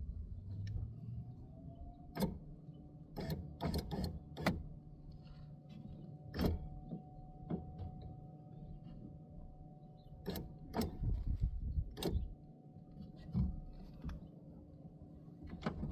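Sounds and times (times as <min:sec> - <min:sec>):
clicks and knocks of car window parts: 0:02.1 - 0:02.5, 0:03.2 - 0:04.7, 0:10.2 - 0:12.3, 0:13.1 - 0:14.3, 0:15.4 - 0:15.9.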